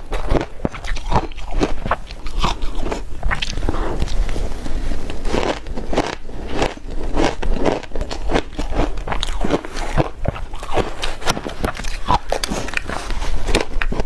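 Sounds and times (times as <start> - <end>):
ice being chewed: 0.0 - 14.0.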